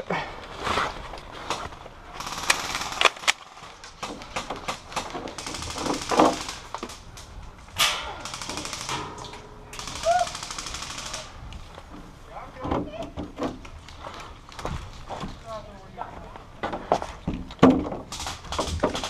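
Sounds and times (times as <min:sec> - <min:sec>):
airsoft guns firing bursts: 0:02.2 - 0:03.3, 0:04.4 - 0:06.7, 0:08.2 - 0:11.5.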